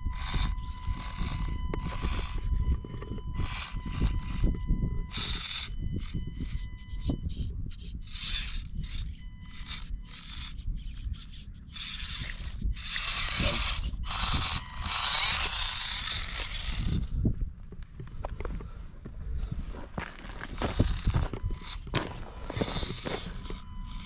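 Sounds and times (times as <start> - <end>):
small electric motor whirring: 0.0 - 17.3, 20.3 - 24.0.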